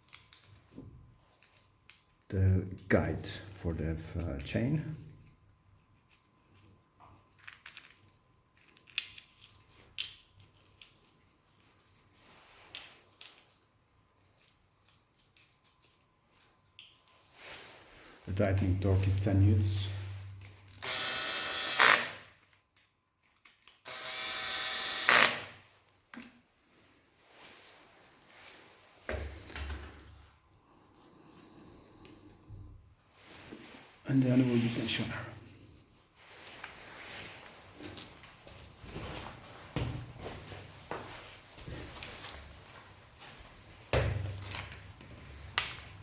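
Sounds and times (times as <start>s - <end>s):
cordless drill driving bolts: 20.8s - 22.2s, 23.9s - 25.5s.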